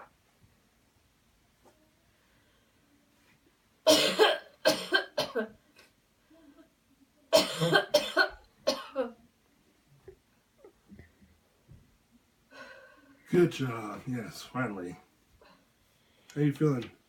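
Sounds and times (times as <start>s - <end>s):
person coughing loudly: 3.9s - 5.5s, 7.3s - 9.1s.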